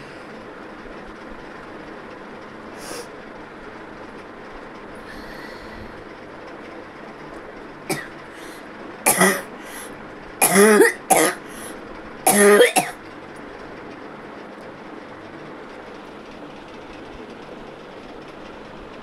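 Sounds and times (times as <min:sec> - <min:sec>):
steady background hiss: 0:00.0 - 0:16.9
person coughing hoarsely: 0:07.9 - 0:08.5, 0:09.1 - 0:11.7, 0:12.3 - 0:13.0.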